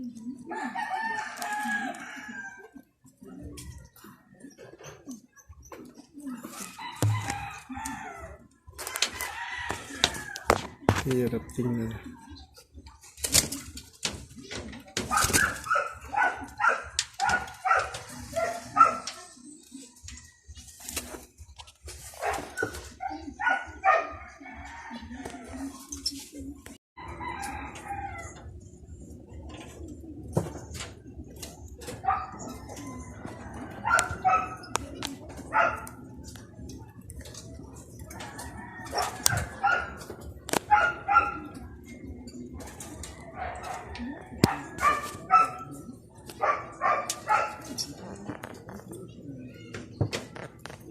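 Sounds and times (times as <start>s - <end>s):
dog barking: 15.1s - 19.2s, 22.2s - 24.3s, 32.0s - 32.6s, 33.8s - 34.8s, 35.5s - 36.0s, 38.9s - 40.0s, 40.6s - 41.6s, 43.4s - 47.7s.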